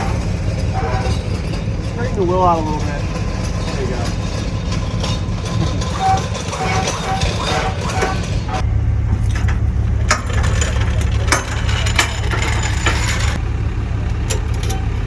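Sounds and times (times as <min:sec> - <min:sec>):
creaking of wood: 0:00.0 - 0:13.4
clicks and knocks: 0:02.8 - 0:13.4
low engine hum: 0:08.3 - 0:15.0.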